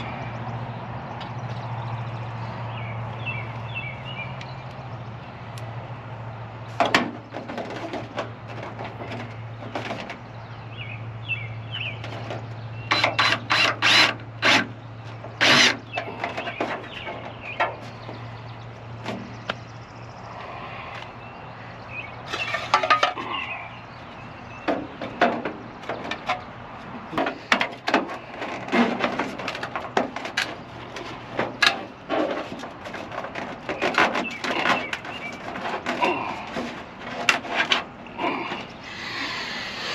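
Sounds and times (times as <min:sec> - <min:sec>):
knocks and clatter of downspout: 0:06.7 - 0:10.8, 0:11.7 - 0:19.9, 0:22.2 - 0:38.8.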